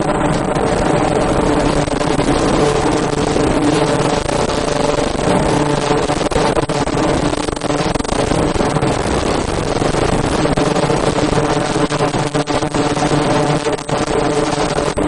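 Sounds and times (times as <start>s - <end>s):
machine humming: 0.0s - 15.0s.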